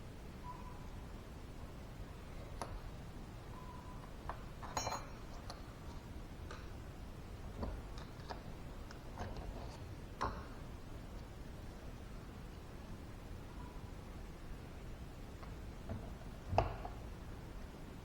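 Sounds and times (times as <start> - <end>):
steel parts clinking: 4.6 - 5.6.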